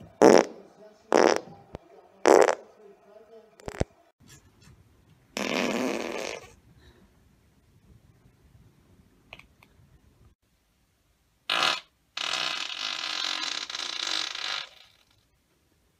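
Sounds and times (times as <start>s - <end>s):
man farting: 0.2s - 1.5s, 2.2s - 2.6s, 5.4s - 6.6s, 11.5s - 15.2s.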